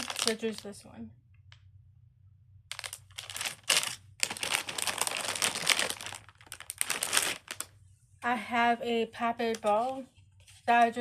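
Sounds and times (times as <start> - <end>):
plastic crinkling and rustling: 0.0 - 0.8, 2.7 - 7.8, 9.4 - 11.0.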